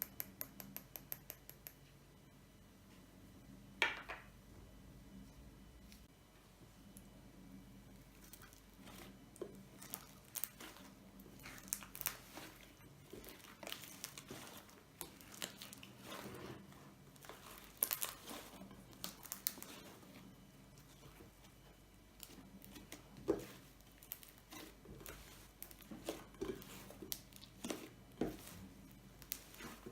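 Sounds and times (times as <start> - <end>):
slime crackling and popping: 9.7 - 16.2, 17.2 - 20.0, 22.2 - 25.8, 26.5 - 28.6, 29.2 - 29.9.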